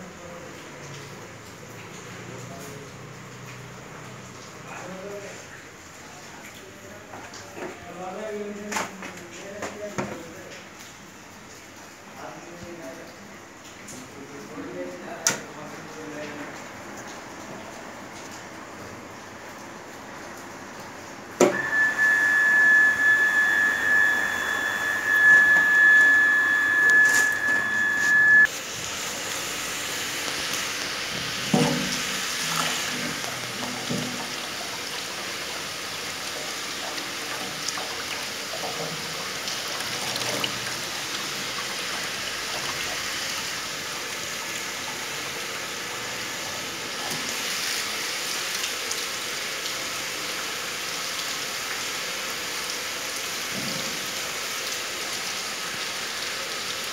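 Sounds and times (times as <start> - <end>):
water rushing through filter: 16.6 - 50.4
loud high-pitched tone: 21.4 - 28.5.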